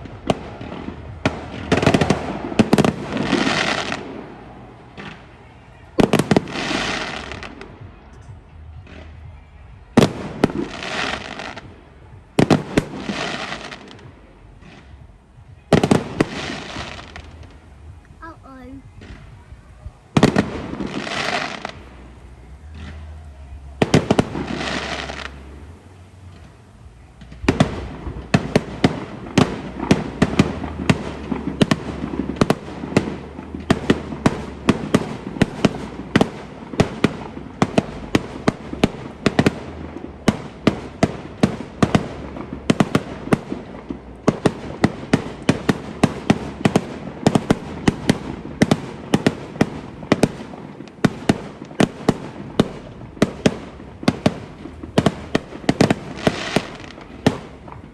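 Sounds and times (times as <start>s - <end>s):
fireworks hissing: 0.0s - 8.3s, 20.1s - 57.9s
fireworks banging and crackling: 0.0s - 57.9s.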